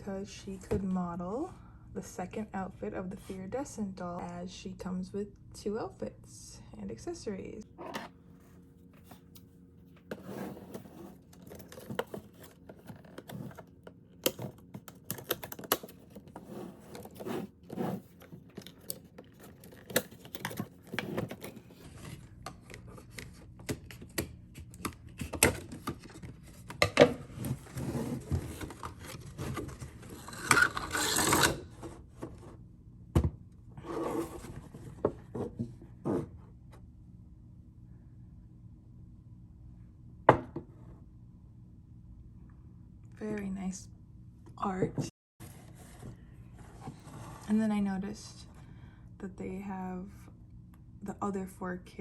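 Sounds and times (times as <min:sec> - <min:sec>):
packaging rubbing and scraping: 0:10.1 - 0:22.3.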